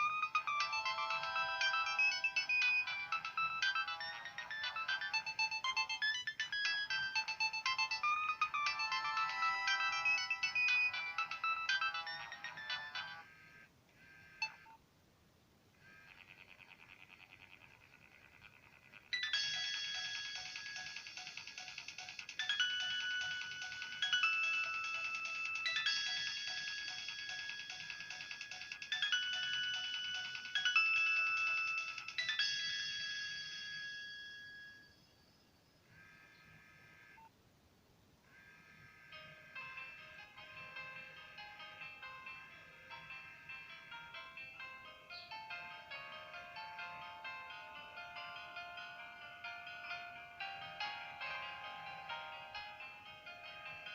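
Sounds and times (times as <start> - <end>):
quick ticking beat: 0.0 - 13.2, 19.3 - 32.5
phone ringtone melody: 0.0 - 14.8, 18.8 - 35.2, 38.6 - 53.9.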